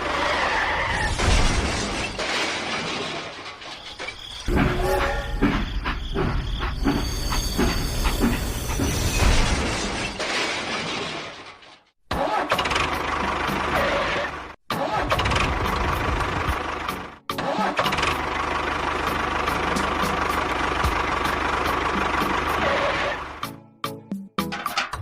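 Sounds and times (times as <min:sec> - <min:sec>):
machinery noise: 0:03.8 - 0:09.5
vehicle engine: 0:12.2 - 0:23.6.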